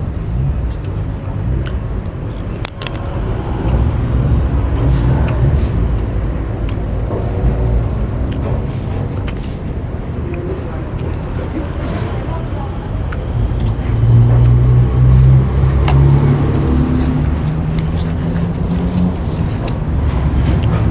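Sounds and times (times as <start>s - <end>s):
road traffic rumble: 0.0s - 20.9s
slurping noodle soup: 13.1s - 20.9s.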